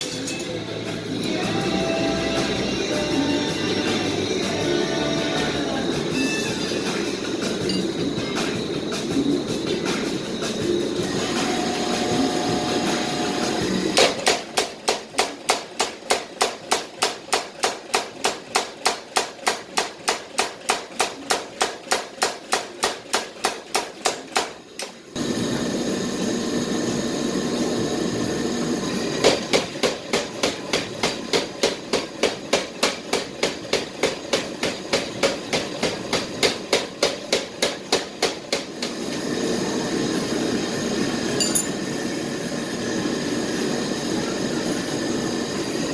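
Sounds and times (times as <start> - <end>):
machinery running noise: 0.0 - 14.9, 24.8 - 37.6, 38.4 - 45.9
power hammer striking steel: 41.4 - 41.8.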